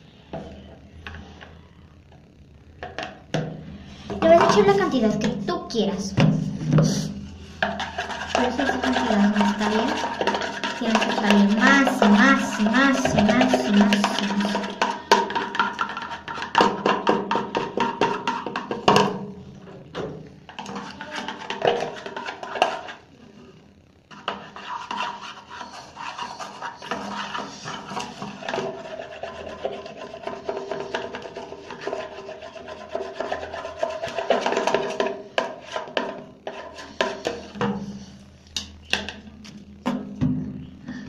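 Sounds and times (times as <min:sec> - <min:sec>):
wooden stick scraping a plate: 0:06.8 - 0:16.8, 0:24.1 - 0:38.2.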